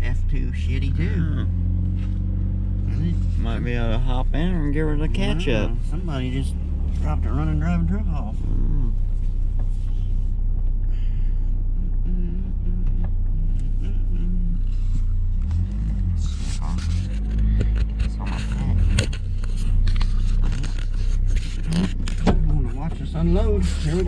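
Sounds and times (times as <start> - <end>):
truck engine low rumble: 0.0 - 24.0.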